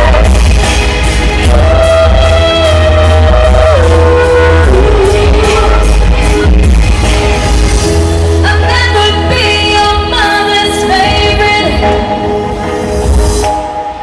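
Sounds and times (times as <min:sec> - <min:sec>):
person singing: 0:00.0 - 0:06.7
heavy bass: 0:00.0 - 0:13.6
live pop band music: 0:00.0 - 0:14.0.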